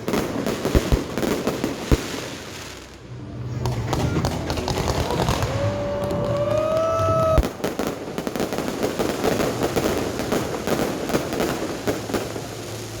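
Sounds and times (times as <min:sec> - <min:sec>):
firework crackling: 0:00.0 - 0:13.0
firework whistling: 0:02.0 - 0:08.1
firework bang: 0:03.0 - 0:08.2.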